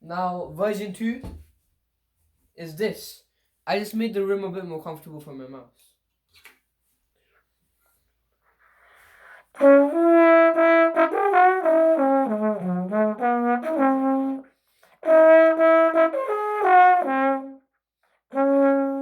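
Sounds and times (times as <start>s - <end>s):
trombone melody: 9.5s - 19.0s.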